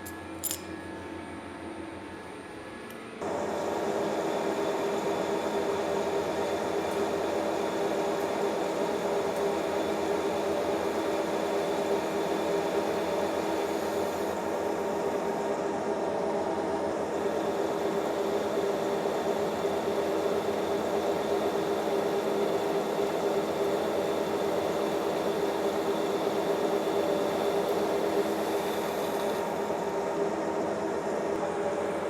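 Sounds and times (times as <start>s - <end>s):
metal lathe humming: 3.2s - 32.0s.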